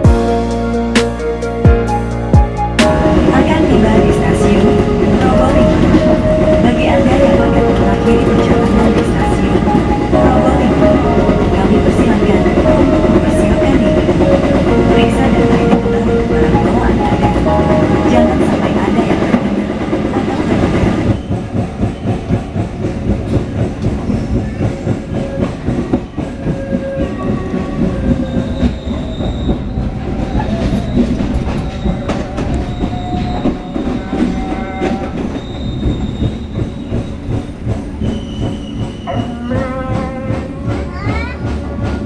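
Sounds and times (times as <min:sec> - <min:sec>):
train rolling rumble: 0:00.0 - 0:42.0
high wheel squeals: 0:26.6 - 0:39.7.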